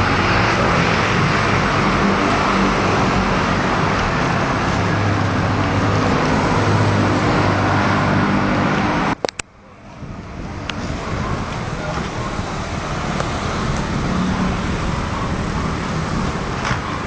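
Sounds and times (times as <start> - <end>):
road traffic with engine hum: 0.0 - 17.0
sharp clicks: 9.1 - 9.5.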